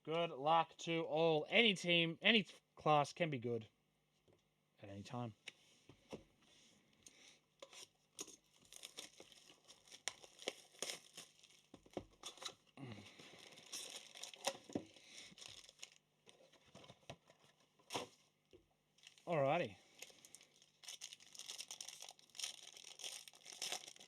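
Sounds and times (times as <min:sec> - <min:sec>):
wrappers tearing and crinkling: 0:08.2 - 0:12.6, 0:13.3 - 0:16.0, 0:19.0 - 0:24.0.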